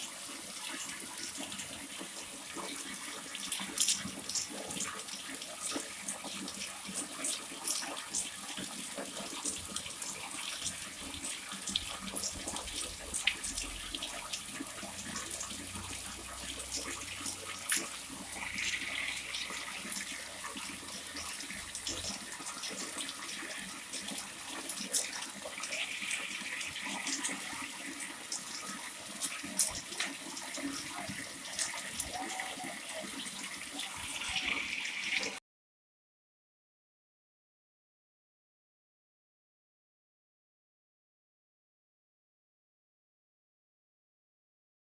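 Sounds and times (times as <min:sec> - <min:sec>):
water pouring from a spout: 0:00.0 - 0:35.4.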